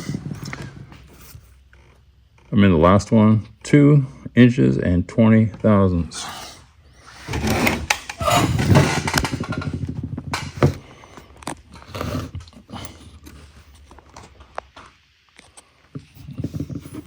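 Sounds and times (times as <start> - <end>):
metal scraping: 7.0 - 10.9.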